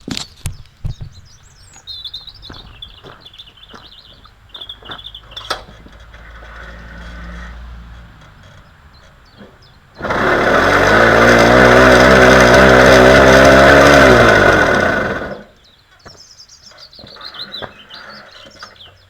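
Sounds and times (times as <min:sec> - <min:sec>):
songbird high chirps: 0:00.1 - 0:05.6, 0:08.6 - 0:10.0, 0:15.5 - 0:19.0.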